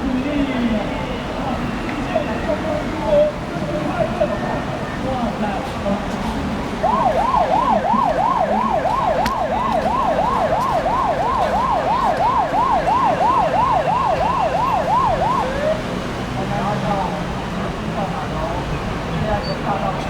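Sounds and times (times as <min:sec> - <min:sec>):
emergency siren yelping: 0:06.8 - 0:16.0.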